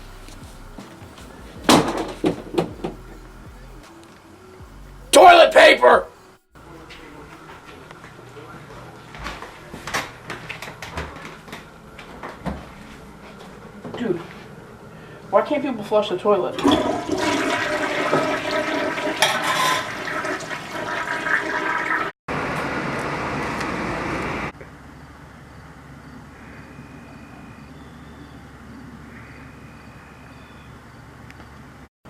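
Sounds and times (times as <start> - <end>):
toilet flushing: 16.4 - 22.1.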